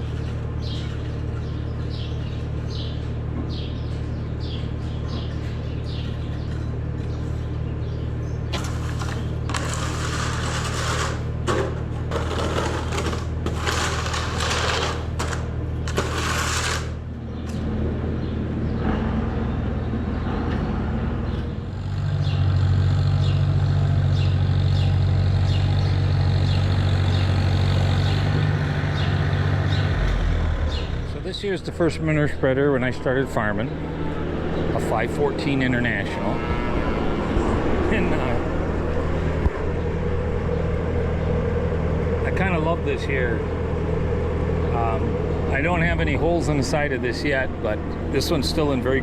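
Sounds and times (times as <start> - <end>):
farm machinery engine running: 6.4 - 18.0, 23.1 - 49.0
loud rushing scraping noises: 8.5 - 17.1.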